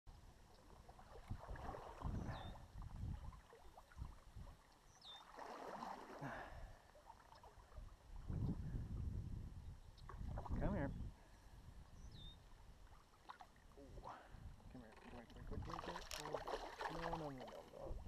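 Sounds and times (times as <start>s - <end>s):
wind gusting on microphone: 1.3s - 3.4s, 8.1s - 12.2s.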